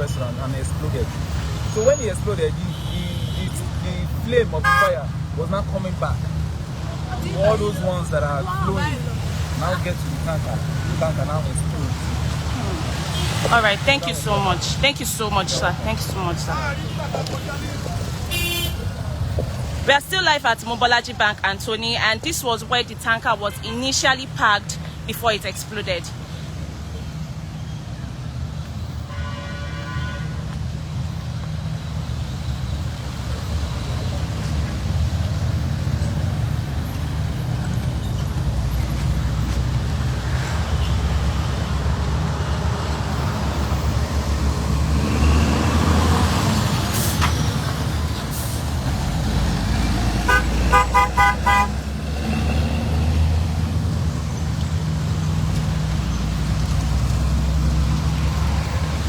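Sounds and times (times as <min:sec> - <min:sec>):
road traffic: 0:00.0 - 0:59.0
car horn toots: 0:04.6 - 0:05.0, 0:18.3 - 0:18.8, 0:50.3 - 0:51.8.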